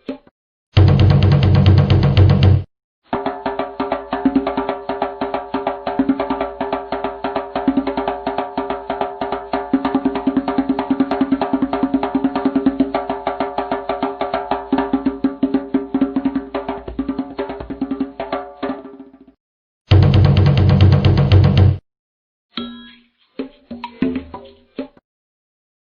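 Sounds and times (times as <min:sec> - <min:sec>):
drums played fast: 0:00.8 - 0:19.0, 0:19.9 - 0:21.8.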